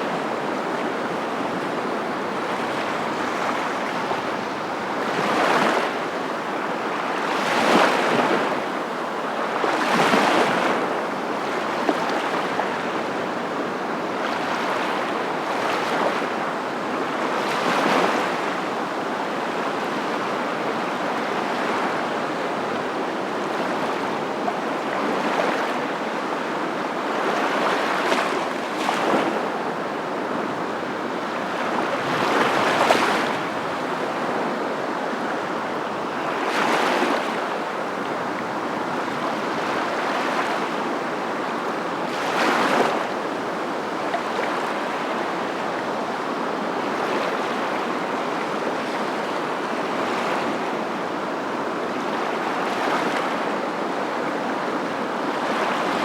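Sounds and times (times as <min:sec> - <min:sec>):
ocean waves breaking: 0:00.0 - 0:13.3, 0:23.5 - 0:51.4.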